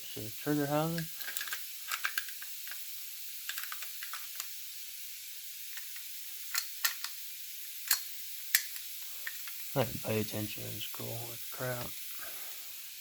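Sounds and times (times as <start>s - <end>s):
recording hiss: 0.0s - 13.0s
shotgun parts clicking: 1.0s - 2.8s, 3.5s - 4.5s, 6.5s - 7.2s.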